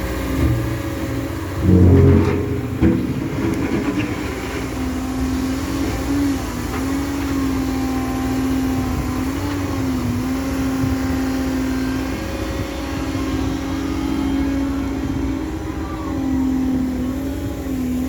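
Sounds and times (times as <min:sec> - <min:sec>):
excavator diesel engine droning: 0:00.0 - 0:18.0.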